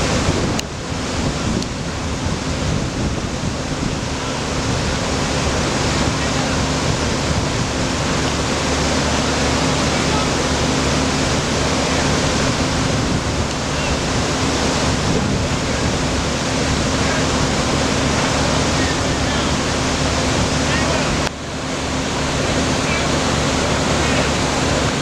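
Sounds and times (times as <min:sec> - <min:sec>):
floodwater rushing: 0:00.0 - 0:25.0
steady low hum: 0:00.0 - 0:25.0.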